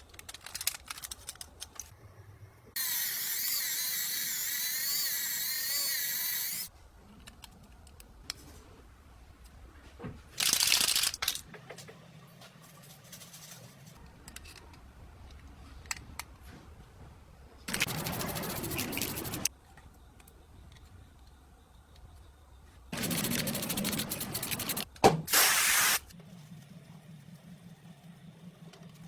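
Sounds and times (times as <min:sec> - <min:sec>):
aerosol spray can spraying: 0:25.3 - 0:26.1.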